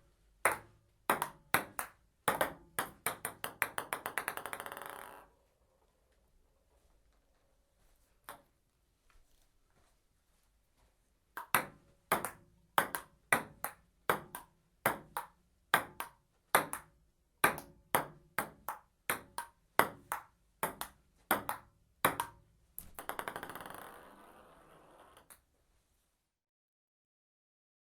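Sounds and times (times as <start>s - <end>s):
ball bouncing on table: 0.5s - 5.3s, 11.4s - 25.4s
ping-pong ball clicks: 0.5s - 5.3s, 11.4s - 25.4s.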